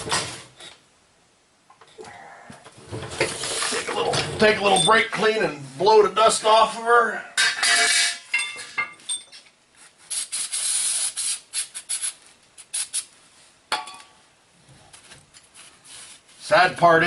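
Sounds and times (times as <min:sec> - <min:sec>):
aerosol spray hissing: 0:10.1 - 0:13.1.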